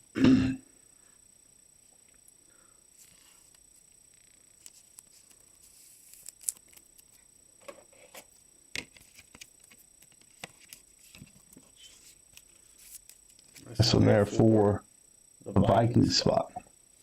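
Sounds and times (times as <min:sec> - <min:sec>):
trading cards clicking and rustling: 0:08.8 - 0:11.7.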